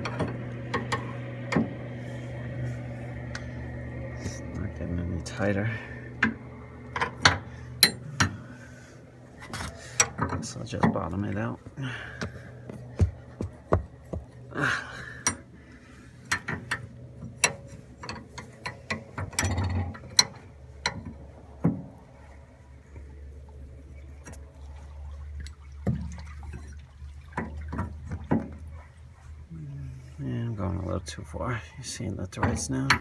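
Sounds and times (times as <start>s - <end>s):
cable fitting clicks and knocks: 0.0s - 1.8s, 16.3s - 21.8s, 32.4s - 33.0s
steady low hum: 0.0s - 33.0s.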